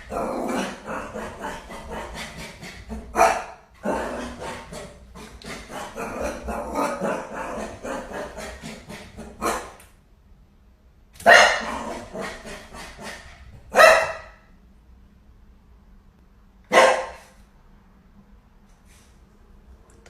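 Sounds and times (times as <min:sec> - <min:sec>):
dog barking: 0:00.0 - 0:09.8, 0:11.2 - 0:14.5, 0:16.7 - 0:17.4.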